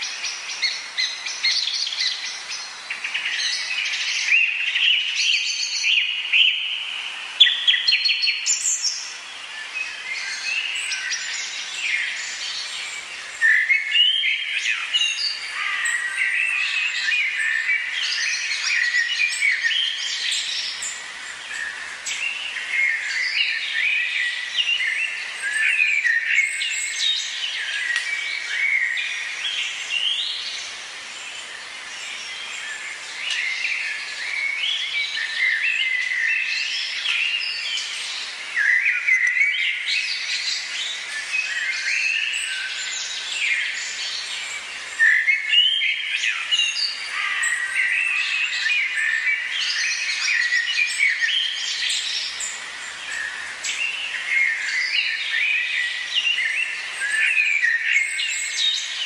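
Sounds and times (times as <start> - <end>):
birds chorus chirping: 0.0 - 59.0.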